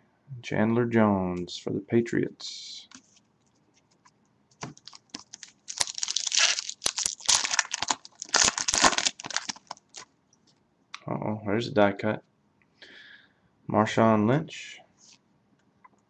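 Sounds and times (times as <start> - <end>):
cards being handled: 2.9 - 10.0
foil wrapper tearing and crinkling: 4.6 - 10.0.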